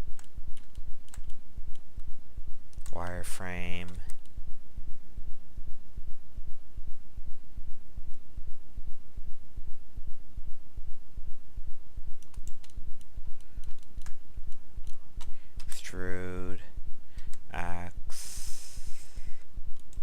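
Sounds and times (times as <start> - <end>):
low throbbing hum: 0.0 - 20.0
mouse and keyboard clicks: 12.2 - 15.8.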